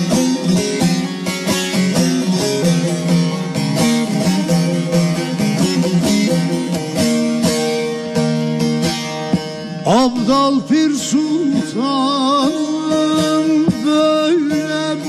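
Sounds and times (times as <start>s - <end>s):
person singing ornamented melody: 0.0s - 7.2s, 9.8s - 15.0s
plucked string instrument: 0.0s - 15.0s.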